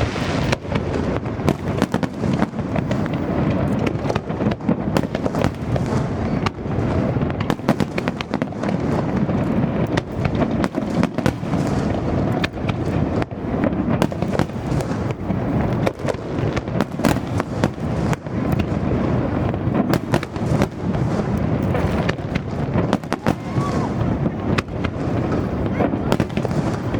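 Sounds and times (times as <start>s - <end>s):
firework bangs and crackles: 0.0s - 26.9s.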